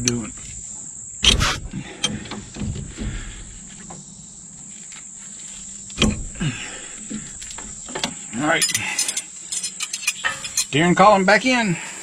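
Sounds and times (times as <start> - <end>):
crickets chirping: 0.0 - 12.0
soft bumps: 1.2 - 8.2.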